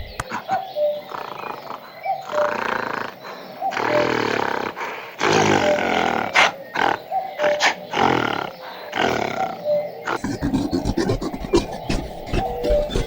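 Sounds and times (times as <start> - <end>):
animal growling: 7.8 - 13.0.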